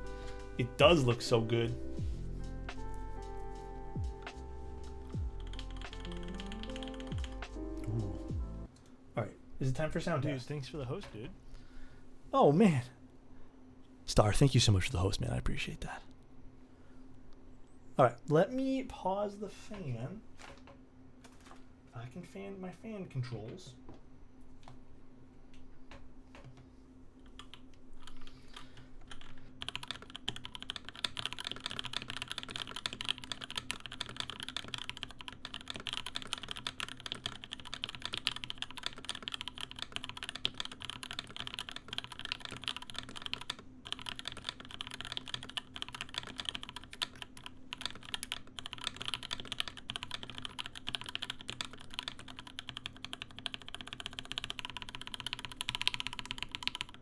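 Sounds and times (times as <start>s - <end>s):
fast typing on mechanical keyboard: 5.4s - 7.4s, 27.3s - 57.0s.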